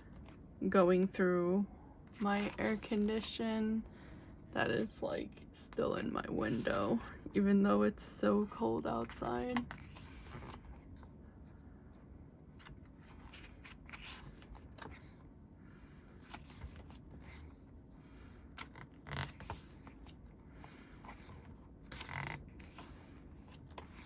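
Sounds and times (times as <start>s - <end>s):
book pages turning: 2.2s - 3.3s, 8.4s - 11.2s, 12.5s - 15.3s, 16.2s - 17.7s, 18.4s - 24.0s.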